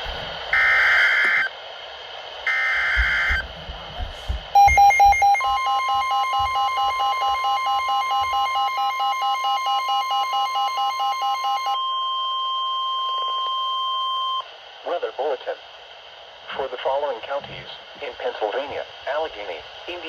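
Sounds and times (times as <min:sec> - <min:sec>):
rapid beeping alarm: 0:00.0 - 0:01.5, 0:02.5 - 0:14.4
steady single-pitch alarm tone: 0:00.0 - 0:01.5, 0:02.4 - 0:03.5, 0:04.5 - 0:14.5
screeching digital data bursts: 0:00.5 - 0:01.5.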